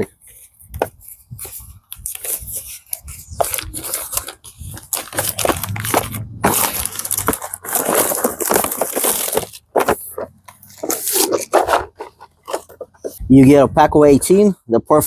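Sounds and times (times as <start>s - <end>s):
plastic packaging crinkling: 1.9s - 13.2s.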